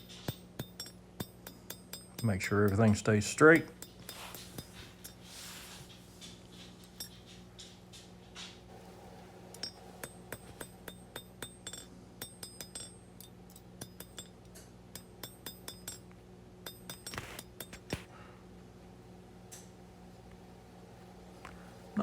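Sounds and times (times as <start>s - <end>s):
hammer striking steel on anvil: 0.0s - 5.2s, 9.5s - 18.0s
steady low hum: 0.0s - 22.0s.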